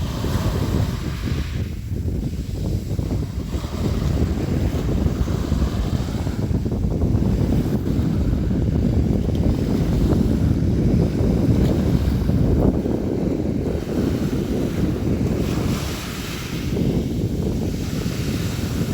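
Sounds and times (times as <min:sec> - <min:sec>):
sea waves splashing: 0:00.0 - 0:18.9
wind rumble on microphone: 0:00.0 - 0:18.9.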